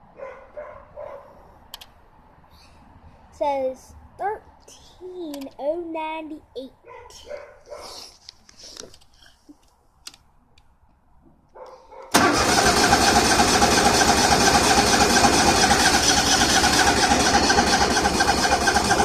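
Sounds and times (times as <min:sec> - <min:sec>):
tractor starter cranking engine: 0:12.1 - 0:19.0.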